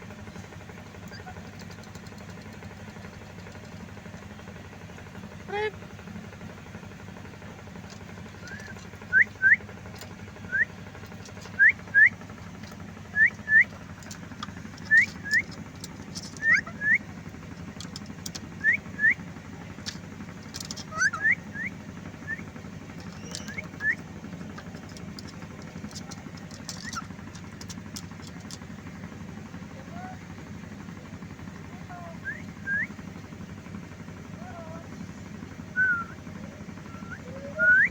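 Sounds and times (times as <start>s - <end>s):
steady low hum: 0.0s - 37.9s
short rising whistles: 35.8s - 36.2s.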